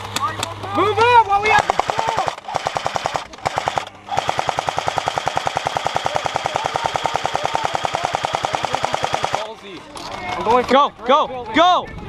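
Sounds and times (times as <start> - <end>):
airsoft rifle firing full auto: 1.5 - 9.6.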